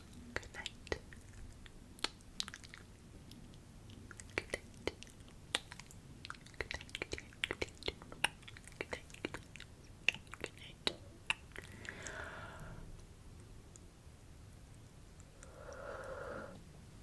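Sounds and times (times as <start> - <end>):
wet mouth clicks and smacks: 0.4 - 12.2.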